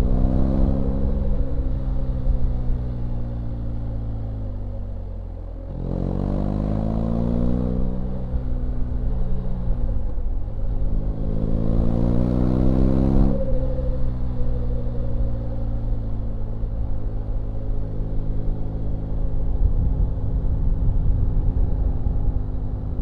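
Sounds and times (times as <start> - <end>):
motorcycle engine revving: 11.0 - 13.6.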